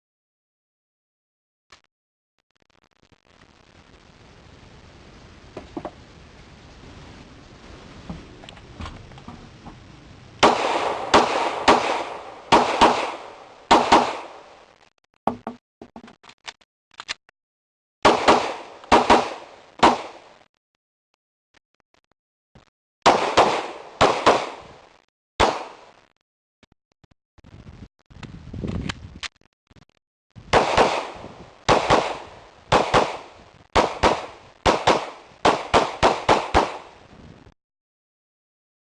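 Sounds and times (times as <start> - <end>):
pistol shots: 10.4 - 14.6, 18.0 - 20.3, 23.0 - 24.6, 25.4 - 25.9, 30.5 - 36.9.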